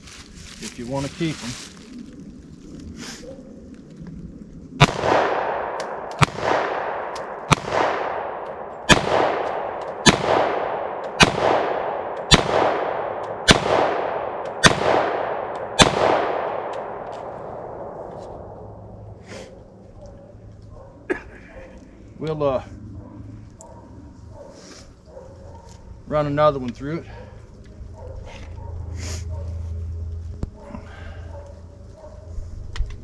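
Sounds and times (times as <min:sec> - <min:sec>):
pistol shots: 0:04.8 - 0:18.0
gunshot echo: 0:04.8 - 0:18.9.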